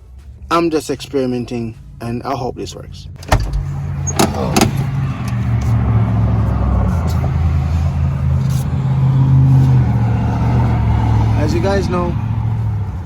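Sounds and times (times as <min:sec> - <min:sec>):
truck engine running: 0:00.0 - 0:13.0.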